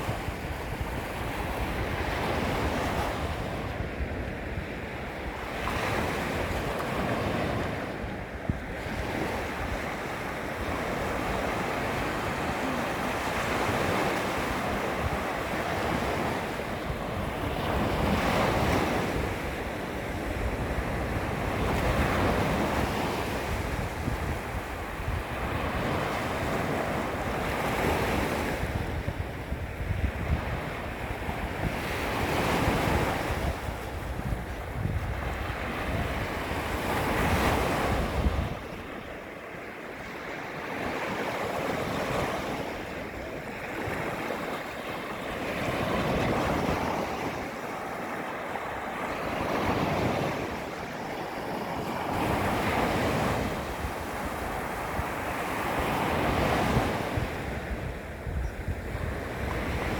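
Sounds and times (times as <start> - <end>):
wind rumbling on microphone: 0.0 - 39.3, 51.6 - 59.9
small waves lapping on shore: 0.0 - 59.9.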